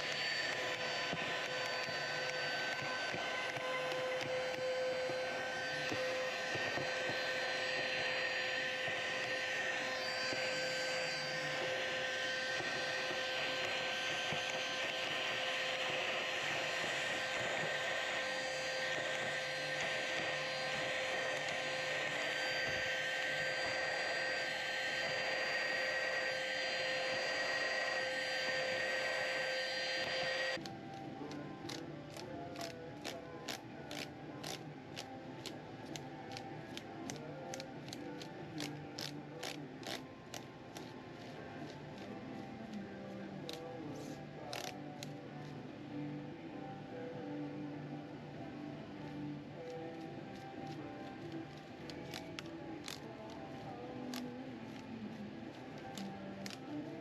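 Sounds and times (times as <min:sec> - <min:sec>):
small electric motor blowing air: 0:00.0 - 0:42.2.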